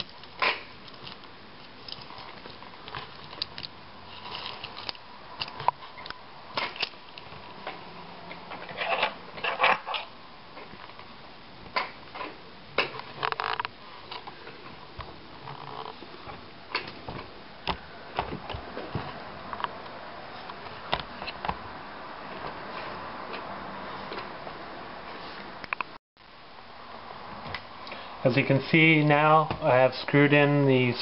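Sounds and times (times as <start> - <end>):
plastic parts being handled: 0.0 - 7.6.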